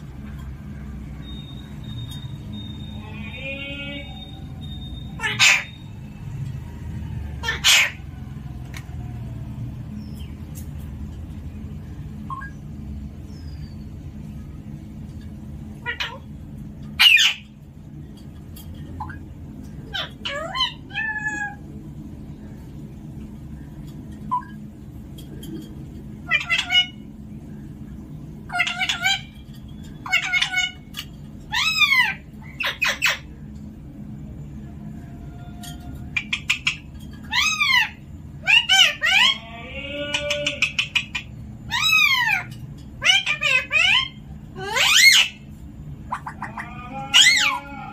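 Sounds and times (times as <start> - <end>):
low background rumble: 0.0 - 47.9
parrot squawks: 1.2 - 6.1, 7.4 - 8.1, 15.8 - 16.3, 17.0 - 17.6, 19.8 - 21.6, 26.2 - 27.1, 28.5 - 29.4, 30.0 - 33.3, 35.4 - 47.9
parrot whining call: 1.2 - 9.6, 17.0 - 17.6, 19.0 - 21.7, 26.2 - 27.1, 28.4 - 33.4, 34.6 - 47.9.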